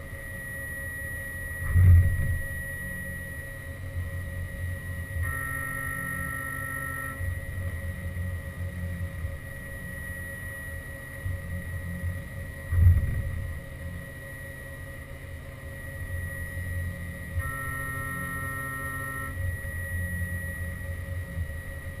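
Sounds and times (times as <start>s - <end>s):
mill high whine: 0.0s - 22.0s
second set of tones: 17.4s - 20.7s.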